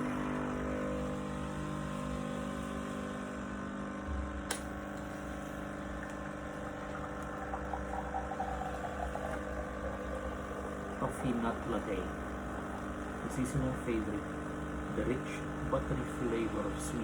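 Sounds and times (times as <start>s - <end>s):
coffee machine pump humming: 0.0s - 17.0s
sharp click: 4.5s - 4.7s.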